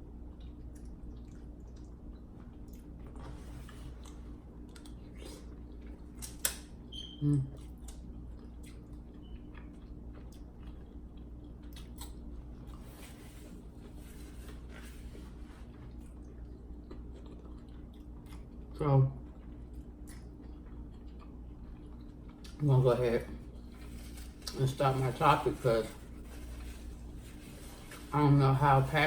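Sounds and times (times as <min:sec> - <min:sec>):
steady low hum: 0:00.0 - 0:29.0
person chewing food: 0:00.1 - 0:22.7
short hum-like vocal sound: 0:07.0 - 0:08.0.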